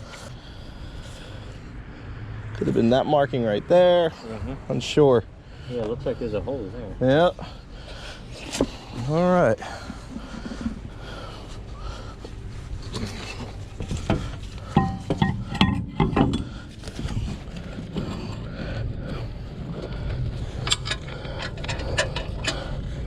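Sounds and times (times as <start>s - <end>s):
steady low hum: 0.0s - 23.0s
sharp clanks and knocks: 13.8s - 18.4s, 20.1s - 22.8s.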